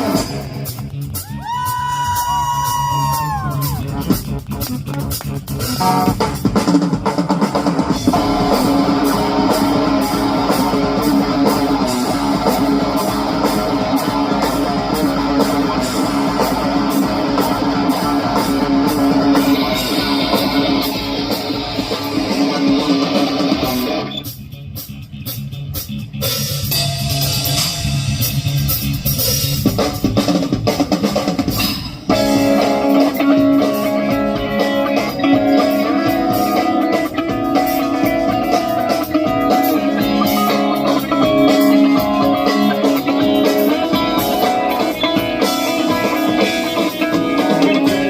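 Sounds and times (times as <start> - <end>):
electric guitars: 0.0 - 24.4, 26.2 - 48.0
bass guitar: 0.0 - 48.0
drum kit: 0.0 - 48.0.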